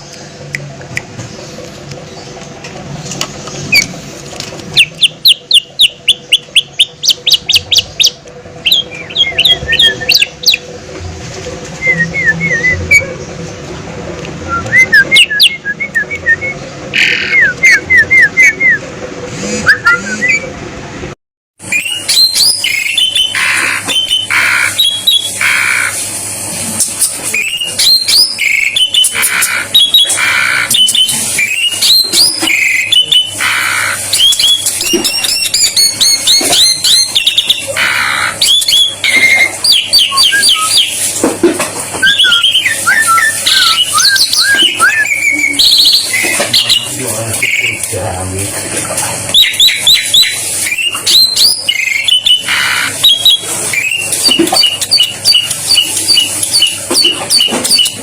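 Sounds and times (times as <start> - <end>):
starling singing: 4.8 - 10.7, 14.4 - 18.8, 21.6 - 26.0, 27.3 - 41.0, 42.0 - 48.1, 49.3 - 58.0.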